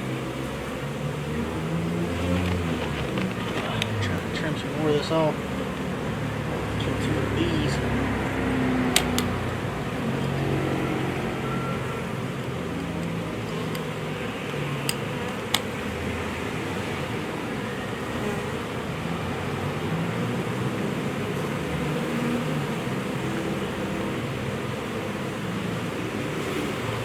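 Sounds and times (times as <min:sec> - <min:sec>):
bee swarm buzzing: 0:00.0 - 0:27.0
pruning shears snipping: 0:08.9 - 0:09.6.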